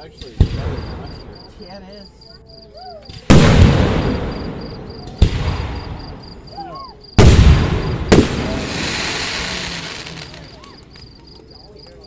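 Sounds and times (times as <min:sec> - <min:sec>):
fireworks booming: 0:00.2 - 0:01.5, 0:03.1 - 0:11.0.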